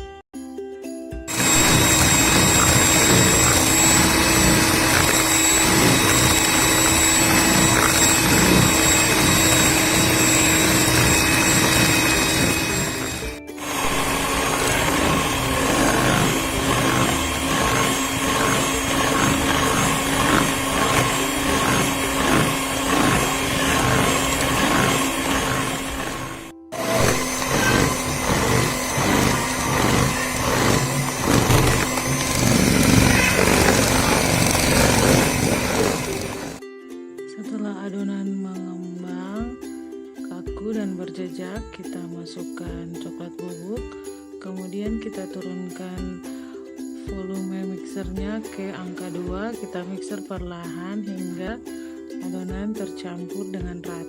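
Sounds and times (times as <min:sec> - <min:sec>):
batter churning: 0:01.3 - 0:36.6
electric hand mixer motor whine: 0:01.3 - 0:36.6.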